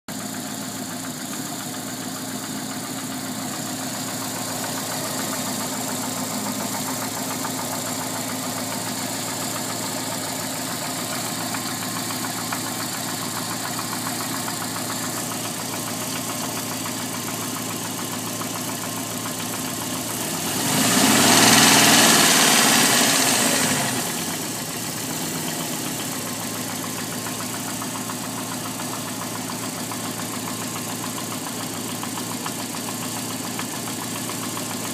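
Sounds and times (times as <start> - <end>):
car engine idling: 0.1 - 34.9
engine ticking: 0.1 - 34.9
engine revving: 20.0 - 26.0.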